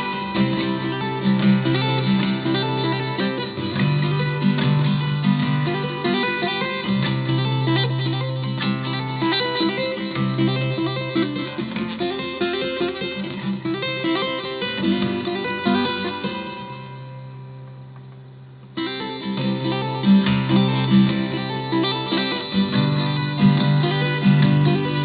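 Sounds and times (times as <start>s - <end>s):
guitar chord strummed sharply: 0.0s - 18.1s, 18.8s - 25.0s
fingerstyle acoustic guitar: 0.0s - 25.0s.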